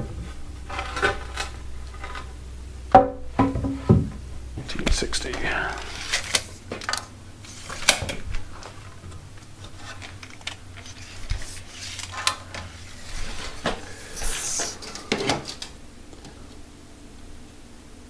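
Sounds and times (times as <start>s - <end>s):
timber and tools knocking: 2.9s - 6.0s
short scraping hiss: 13.0s - 15.6s.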